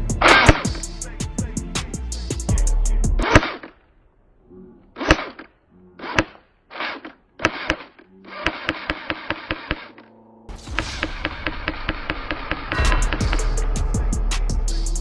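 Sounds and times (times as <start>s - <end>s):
airsoft gun pops: 0.3s - 0.8s.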